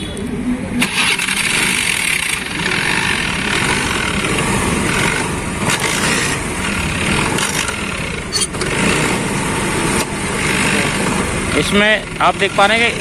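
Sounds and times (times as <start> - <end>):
scooter engine running: 0.8 - 13.0.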